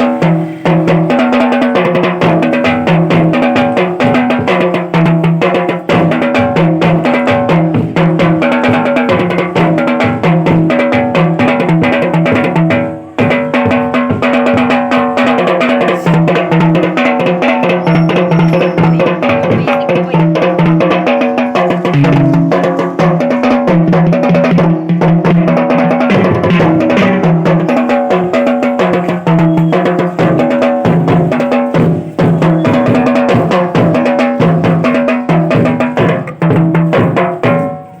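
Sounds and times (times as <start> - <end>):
drum kit playing busy beat: 0.0 - 38.0
moving bass line: 21.8 - 25.0.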